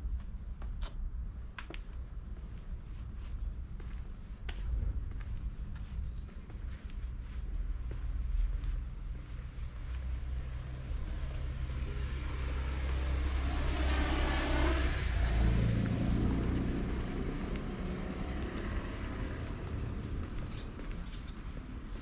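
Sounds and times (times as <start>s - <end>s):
low traffic rumble: 0.0s - 22.0s
car driving past: 9.7s - 21.7s.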